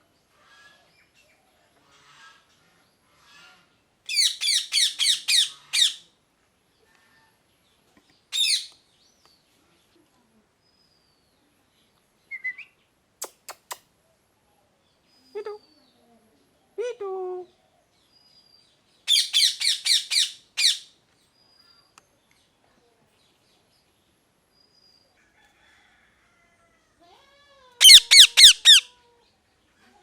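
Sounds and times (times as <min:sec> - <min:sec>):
parakeet screeching: 0:27.8 - 0:28.9.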